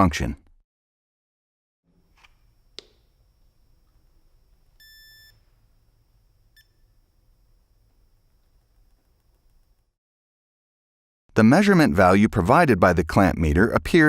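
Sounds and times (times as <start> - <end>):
switch click: 2.2 - 3.1
electronic beep: 4.8 - 5.4.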